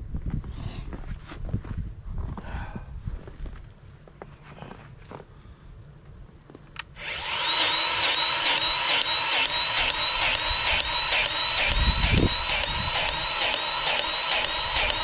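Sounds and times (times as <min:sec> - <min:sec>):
grease gun motor pumping: 0:07.0 - 0:15.0.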